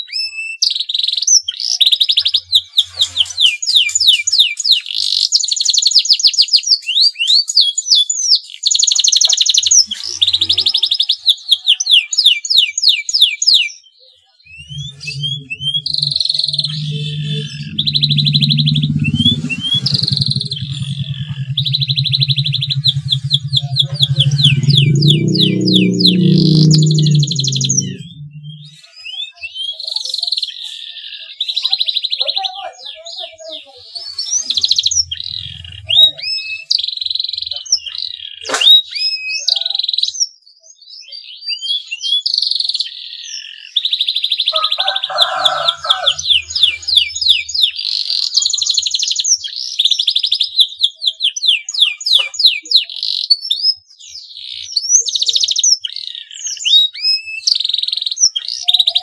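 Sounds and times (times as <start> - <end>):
canary singing trills: 14.5 - 28.8.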